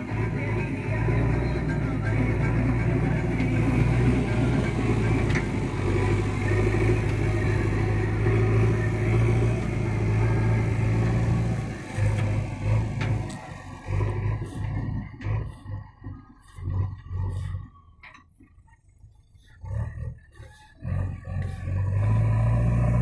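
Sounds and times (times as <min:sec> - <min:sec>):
diesel engine running: 0:00.0 - 0:23.0.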